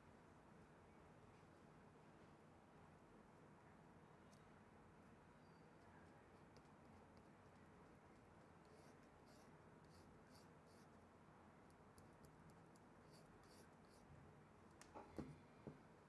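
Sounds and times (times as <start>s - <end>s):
small tools scratching circuit board: 5.4s - 11.0s, 12.0s - 14.1s.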